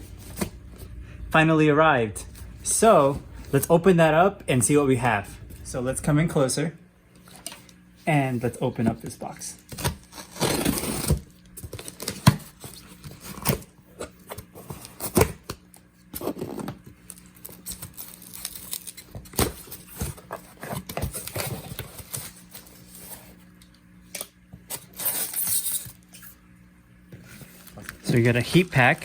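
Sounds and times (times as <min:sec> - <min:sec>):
cardboard and packing rustling: 0:00.0 - 0:01.0, 0:09.7 - 0:15.5, 0:16.1 - 0:23.5, 0:27.1 - 0:29.0
cardboard tearing: 0:09.7 - 0:13.7, 0:17.4 - 0:23.4, 0:24.7 - 0:25.9.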